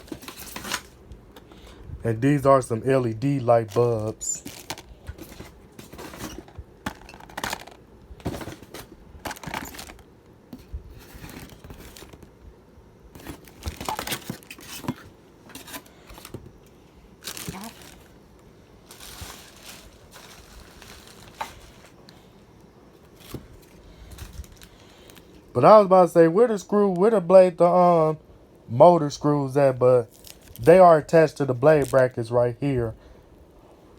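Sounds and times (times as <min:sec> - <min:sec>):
packaging crinkling and tearing: 0:03.6 - 0:10.0, 0:13.2 - 0:16.4, 0:17.2 - 0:18.2, 0:18.8 - 0:22.0, 0:30.1 - 0:30.8.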